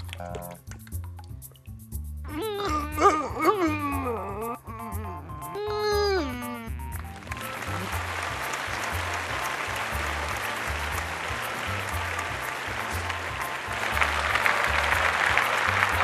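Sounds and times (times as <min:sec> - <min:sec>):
music with repeating bass line: 0:00.0 - 0:16.0
applause: 0:07.0 - 0:16.0.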